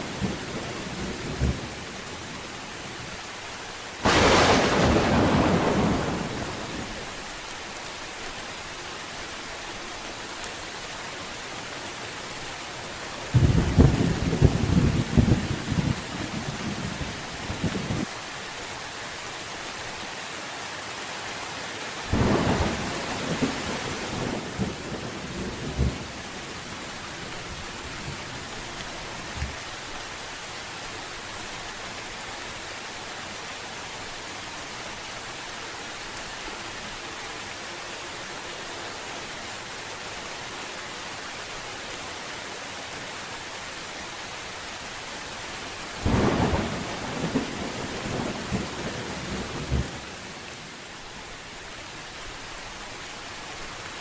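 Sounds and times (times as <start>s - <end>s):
rain hissing: 0.0s - 20.1s, 22.1s - 54.0s
thunder rumbling: 4.0s - 7.1s, 13.4s - 18.0s, 46.0s - 50.1s.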